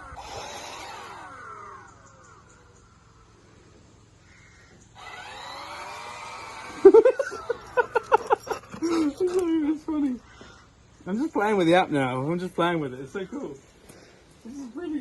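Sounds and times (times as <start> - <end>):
toy vehicle motors whirring: 0.0 - 3.0, 4.8 - 9.5
man laughing: 6.7 - 9.6.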